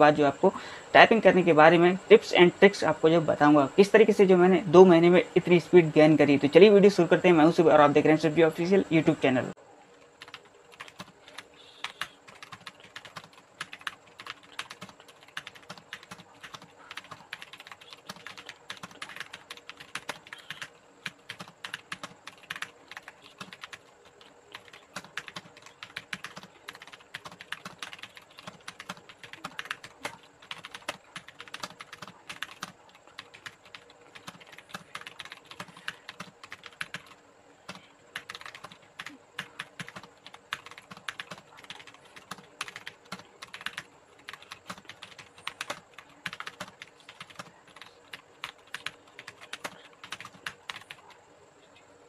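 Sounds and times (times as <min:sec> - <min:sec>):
fast keyboard typing: 0:09.9 - 0:51.2.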